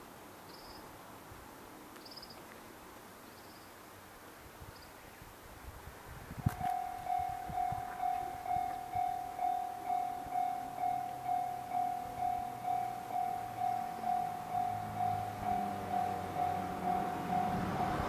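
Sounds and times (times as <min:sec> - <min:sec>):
level-crossing warning bell: 0:06.6 - 0:18.0.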